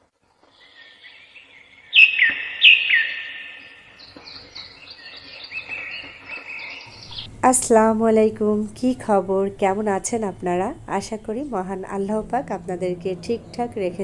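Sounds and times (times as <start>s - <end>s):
birds chirping: 0.4s - 7.4s.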